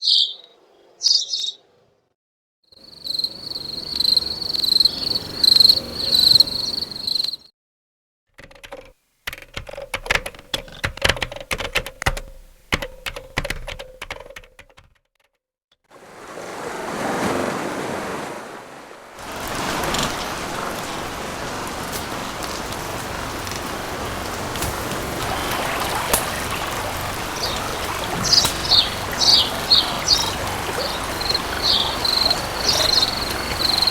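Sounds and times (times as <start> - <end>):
river water flowing: 15.9 - 33.9
fire crackling and popping: 19.2 - 33.9.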